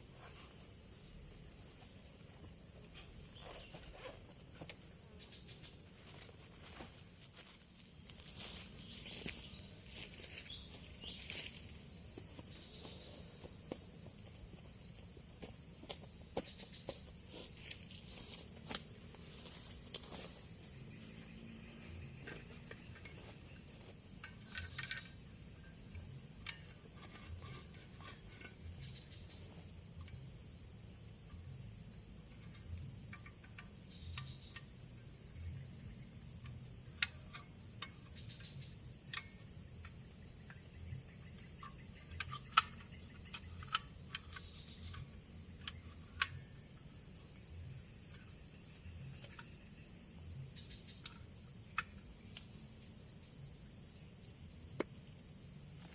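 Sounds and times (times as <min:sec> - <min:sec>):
insects droning: 0:00.0 - 0:55.9.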